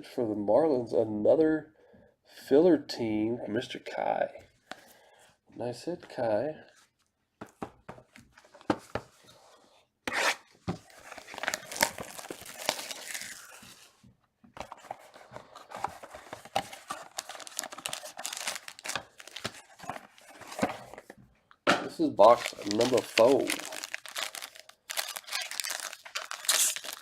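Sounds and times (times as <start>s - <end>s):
plastic wrap tearing and crinkling: 10.1s - 14.0s, 15.8s - 20.9s, 22.2s - 27.0s.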